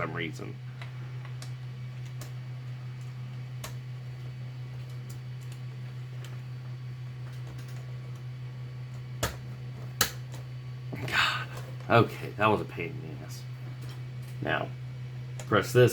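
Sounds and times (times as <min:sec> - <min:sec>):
steady low hum: 0:00.0 - 0:15.9.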